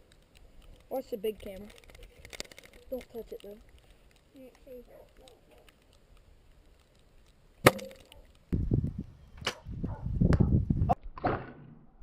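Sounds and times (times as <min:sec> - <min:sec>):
sharp clicks: 0:00.0 - 0:08.5.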